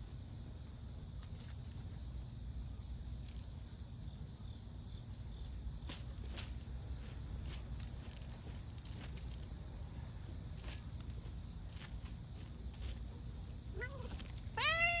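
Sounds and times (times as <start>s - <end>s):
cat meowing: 13.7s - 15.0s.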